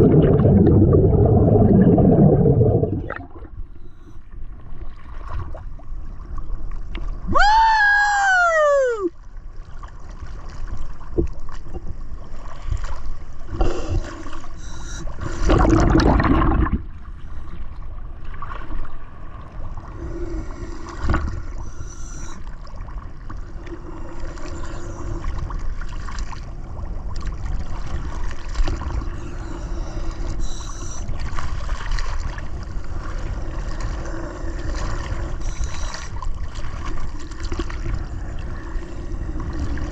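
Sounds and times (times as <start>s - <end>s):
water gurgling and bubbling: 0.0s - 3.9s, 13.4s - 17.3s, 18.4s - 39.9s
steady hum: 14.3s - 15.5s.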